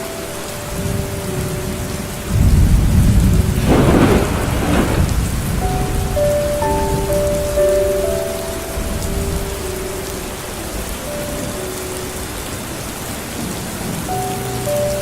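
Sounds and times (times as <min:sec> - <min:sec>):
soft background music: 0:00.0 - 0:15.0
steady rain falling: 0:00.0 - 0:15.0
thunder rumble: 0:00.7 - 0:11.5.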